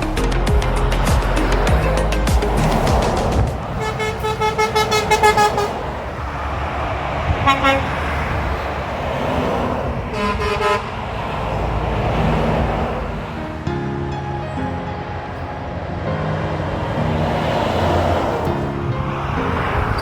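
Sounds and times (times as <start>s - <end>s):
passing motorway traffic: 0.0s - 20.0s
truck horns: 0.6s - 6.6s, 7.2s - 8.9s, 9.8s - 13.4s.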